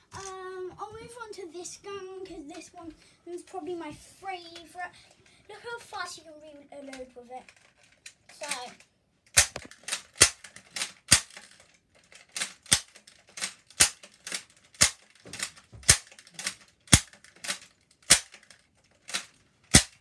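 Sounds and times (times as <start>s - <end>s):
toy blaster clacks and pops: 9.4s - 20.0s.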